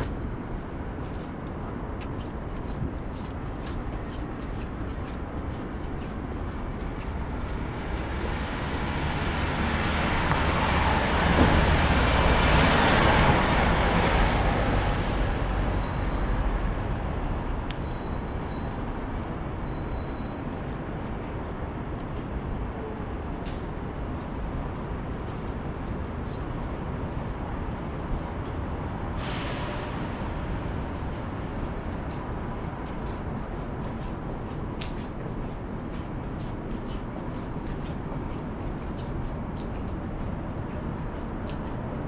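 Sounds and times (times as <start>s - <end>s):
distant traffic rumble: 0.0s - 19.6s
wind: 0.0s - 42.0s.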